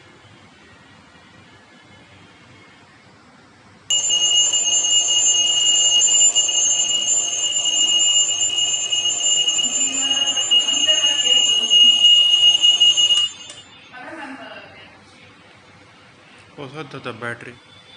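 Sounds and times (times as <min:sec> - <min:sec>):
alarm clock electronic tone: 0:03.9 - 0:13.8.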